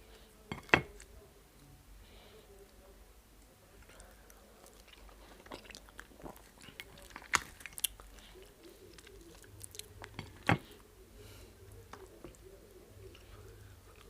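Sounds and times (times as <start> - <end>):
person chewing: 3.8 - 10.8.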